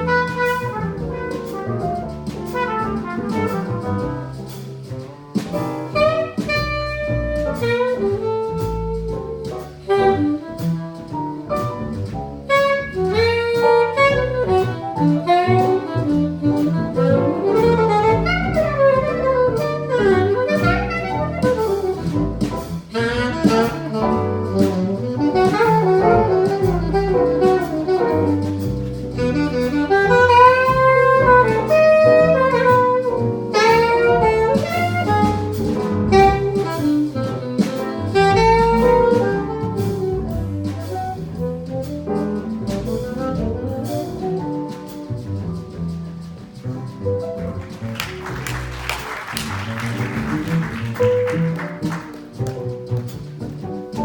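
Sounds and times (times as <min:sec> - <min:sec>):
alto saxophone solo: 0:00.0 - 0:01.8, 0:05.9 - 0:11.1, 0:12.5 - 0:41.7, 0:47.4 - 0:53.2
jazz drums: 0:00.0 - 0:54.0
piano: 0:00.0 - 0:54.0
walking double bass: 0:00.0 - 0:54.0.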